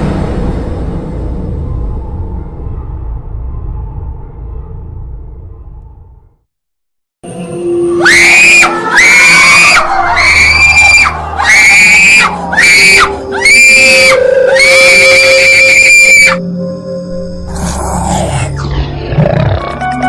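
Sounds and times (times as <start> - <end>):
shrill high-pitched shrieks: 7.6 - 16.5.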